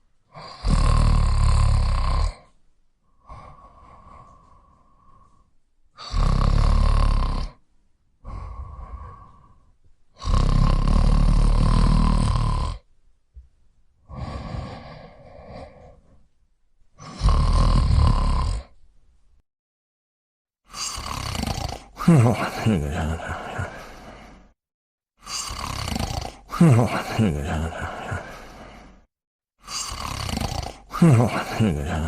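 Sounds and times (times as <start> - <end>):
loud snoring: 0.3 - 2.5, 6.0 - 7.6, 10.2 - 12.9, 17.0 - 18.8, 20.7 - 24.6, 25.2 - 32.0
quiet breaths: 2.2 - 6.3, 7.4 - 12.1, 14.0 - 17.3, 20.7 - 24.6, 25.2 - 32.0.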